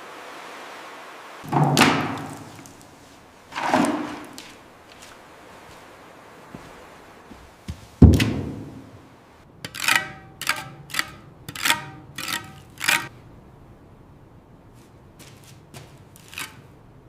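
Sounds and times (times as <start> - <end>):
heavy low thump: 8.0 - 9.0
hammer striking metal: 9.7 - 13.1.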